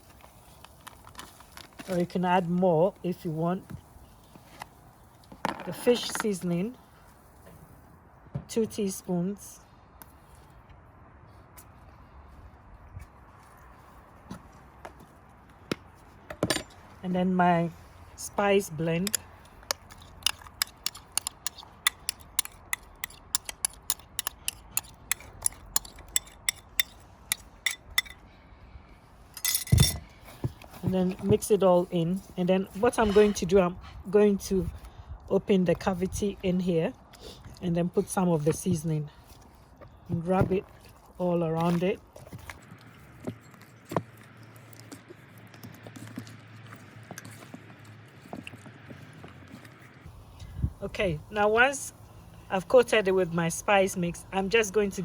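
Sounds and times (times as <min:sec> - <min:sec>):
spice grinder ratcheting clicks: 0:19.1 - 0:28.2.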